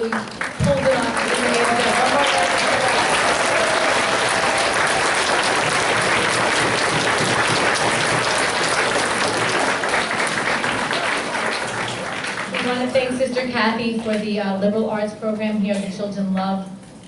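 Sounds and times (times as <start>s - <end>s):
audience applauding: 0.0s - 13.1s.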